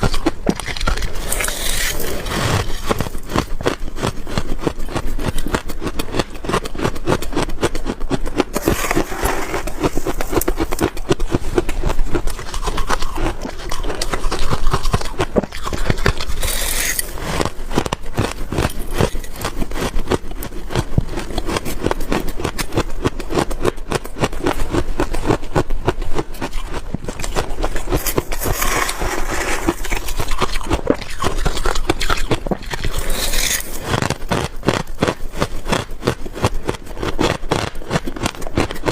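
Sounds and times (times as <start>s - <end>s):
frost being crunched and chewed: 0.0s - 38.9s.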